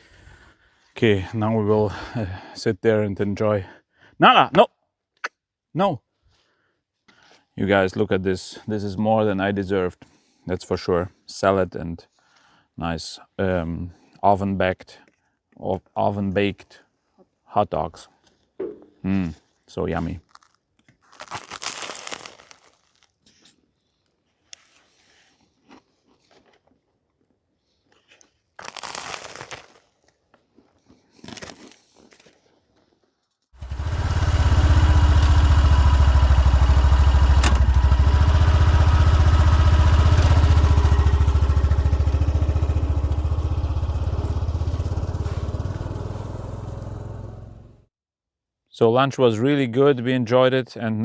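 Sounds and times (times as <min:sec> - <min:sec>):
faint clicks and crunches: 0:20.1 - 0:23.6
engine running with deep hum: 0:33.6 - 0:47.8.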